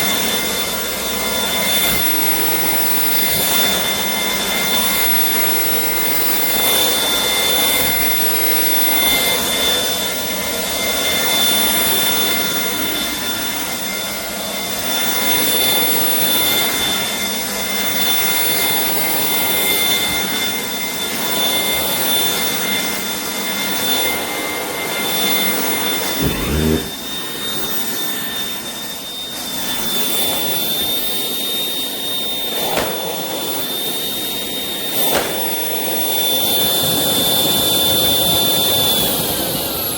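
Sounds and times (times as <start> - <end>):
stick vacuum running: 26.2 - 27.0, 32.0 - 36.4.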